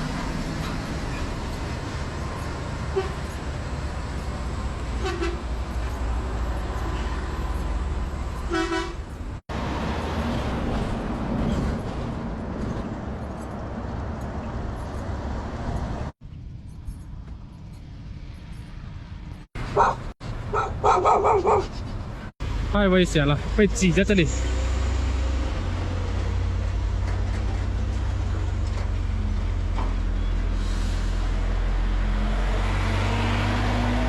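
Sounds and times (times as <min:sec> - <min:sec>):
heavy road traffic: 0:00.0 - 0:34.0
horn toots: 0:05.0 - 0:05.5, 0:08.4 - 0:09.2.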